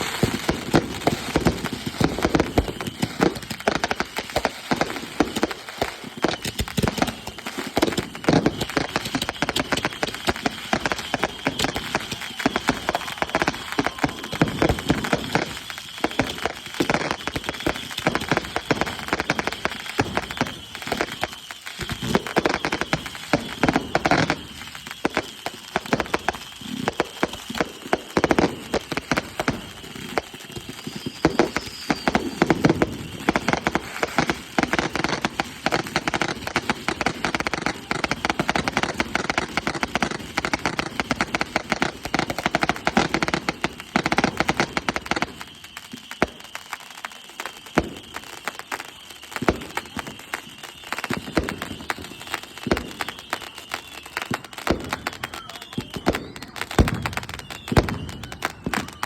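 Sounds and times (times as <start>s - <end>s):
fireworks crackling and popping: 0.0s - 59.0s.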